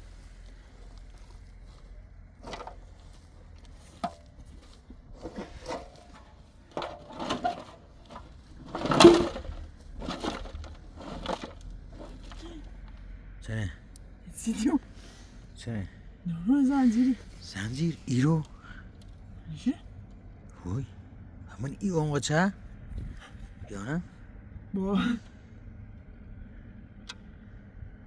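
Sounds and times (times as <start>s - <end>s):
hand tool digging hard earth: 2.4s - 3.0s, 5.1s - 12.6s.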